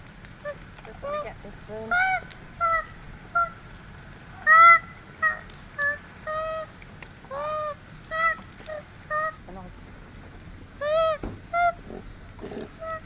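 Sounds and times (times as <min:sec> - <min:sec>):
koala distress cries: 0:04.4 - 0:09.4, 0:10.8 - 0:13.0.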